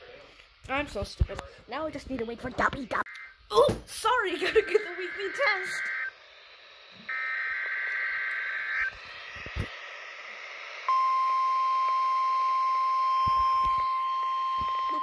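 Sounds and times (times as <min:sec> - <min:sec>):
radio hiss: 0:00.0 - 0:03.4, 0:04.0 - 0:11.2
digital data burst: 0:02.9 - 0:06.3
steady alarm tone: 0:03.0 - 0:15.0.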